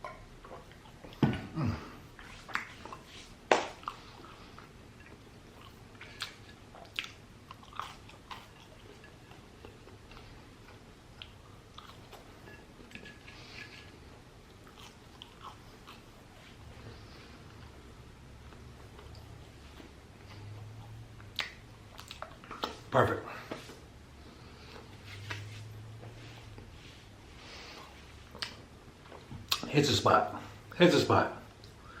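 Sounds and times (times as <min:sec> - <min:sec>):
crunchy food chewing: 0:03.7 - 0:13.9, 0:14.5 - 0:17.8.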